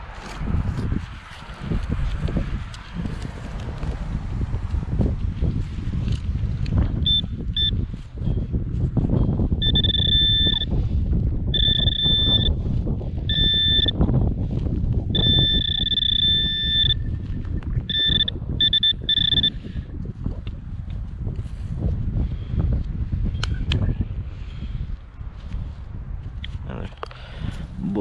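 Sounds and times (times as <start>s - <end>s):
wind rumble on microphone: 0.0s - 28.0s
metal detector beeping: 7.0s - 7.8s, 9.6s - 10.7s, 11.5s - 12.5s, 13.3s - 14.0s, 15.2s - 19.6s.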